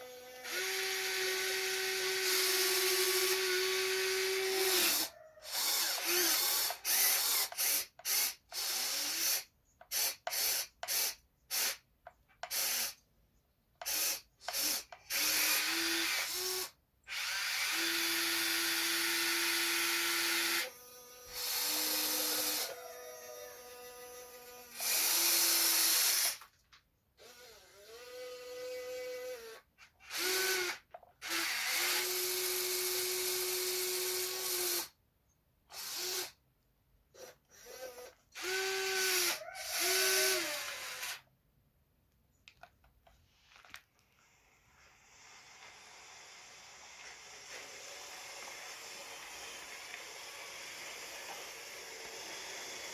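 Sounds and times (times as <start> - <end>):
small electric motors whining: 0.0 - 10.3, 13.8 - 26.4, 37.1 - 41.2.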